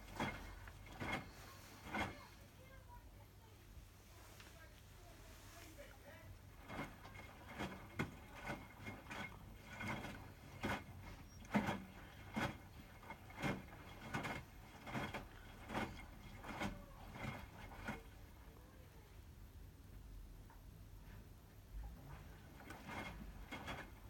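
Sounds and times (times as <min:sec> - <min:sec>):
laundry thudding in washing machine: 0:00.0 - 0:02.3, 0:06.3 - 0:18.3, 0:22.0 - 0:24.0
washing machine low hum: 0:00.0 - 0:24.0.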